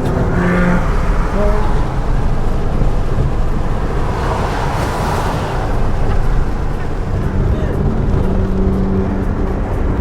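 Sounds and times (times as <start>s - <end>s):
car engine and road rumble: 0.0s - 10.0s
wind noise: 0.0s - 10.0s.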